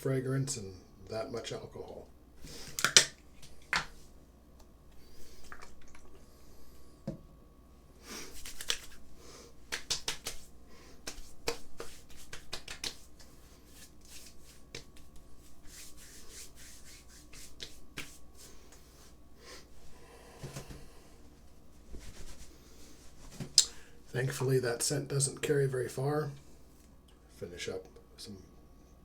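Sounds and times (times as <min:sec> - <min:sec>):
hands slapping skin: 0:02.6 - 0:04.0, 0:08.3 - 0:09.0, 0:09.6 - 0:18.8
hands rubbing skin: 0:08.1 - 0:20.9, 0:21.7 - 0:23.6.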